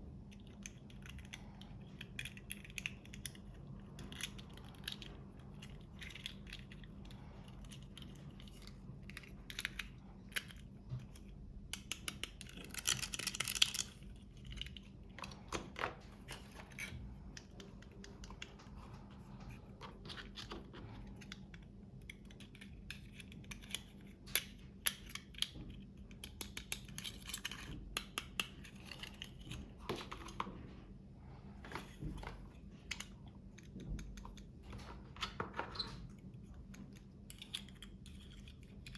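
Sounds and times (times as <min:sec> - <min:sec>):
plastic pieces clicking and tapping: 0:00.3 - 0:18.8, 0:19.8 - 0:30.5.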